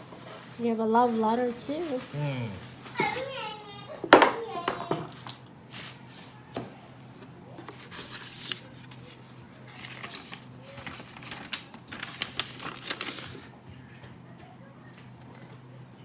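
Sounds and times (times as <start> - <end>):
paper rustling and crinkling: 0.0 - 3.9, 4.5 - 13.5.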